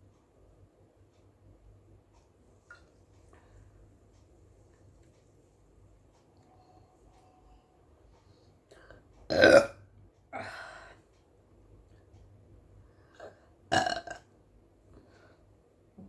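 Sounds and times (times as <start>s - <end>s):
woman burping: 9.3s - 9.8s, 13.7s - 14.2s.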